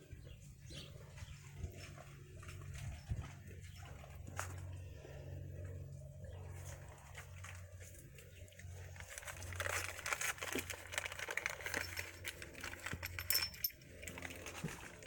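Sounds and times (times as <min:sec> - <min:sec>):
metallic clinking of tools: 0:11.4 - 0:14.3.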